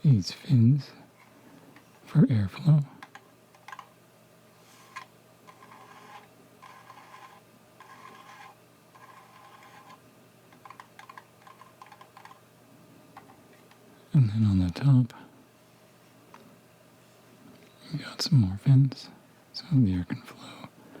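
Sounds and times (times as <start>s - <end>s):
scratching on metal fins: 3.0s - 4.0s, 4.6s - 12.4s.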